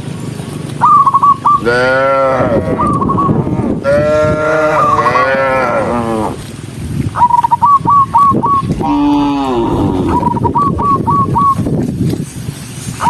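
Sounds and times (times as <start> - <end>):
cows mooing: 1.6 - 6.6, 8.6 - 10.7
short high chirping calls: 7.2 - 8.9.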